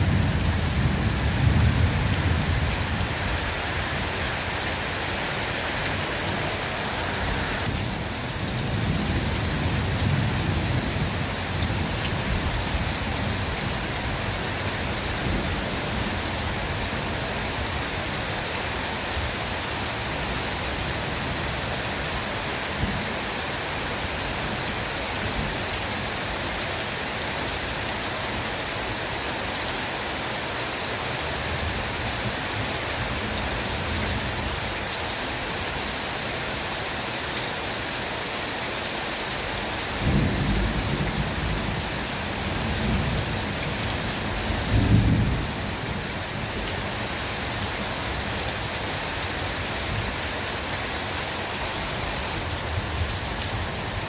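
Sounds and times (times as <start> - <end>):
steady rain in a forest: 0.0 - 54.0.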